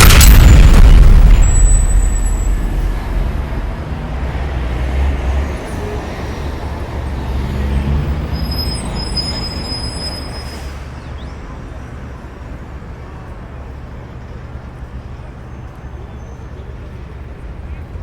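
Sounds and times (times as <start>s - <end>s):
rumbling vehicle: 0.0s - 11.3s.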